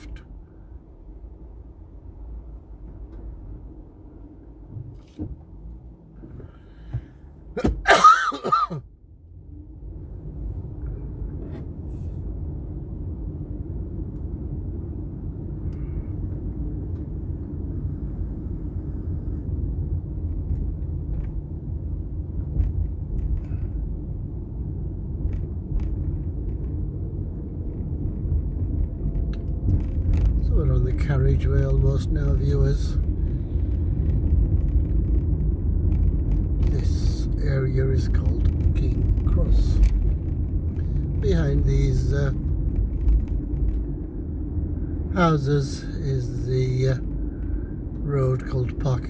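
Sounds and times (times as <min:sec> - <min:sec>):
car road and engine rumble: 0:00.0 - 0:49.0
person sneezing: 0:07.6 - 0:08.8.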